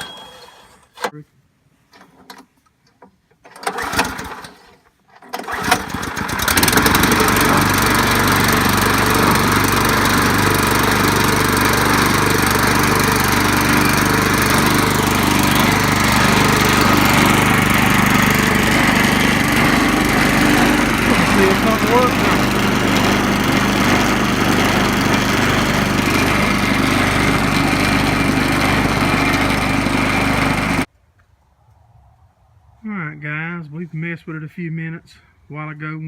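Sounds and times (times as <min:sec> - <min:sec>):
small gasoline engine starting: 0:03.5 - 0:30.9.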